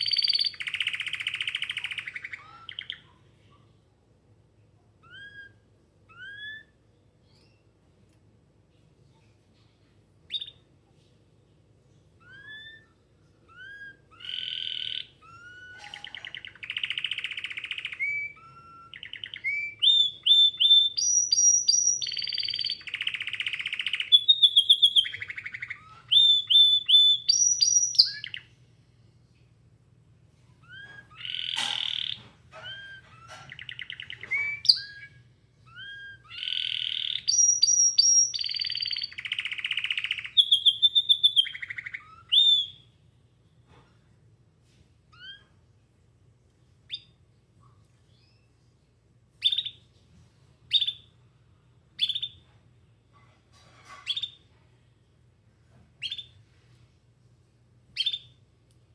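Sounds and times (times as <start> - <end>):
canary singing: 0.0 - 3.2, 5.0 - 7.7, 10.3 - 10.7, 12.2 - 28.5, 30.6 - 42.9, 45.1 - 45.6, 46.9 - 47.2, 49.4 - 49.8, 50.7 - 51.2, 52.0 - 52.5, 53.9 - 54.5, 56.0 - 56.4, 58.0 - 58.4
faint low hum: 0.0 - 58.9.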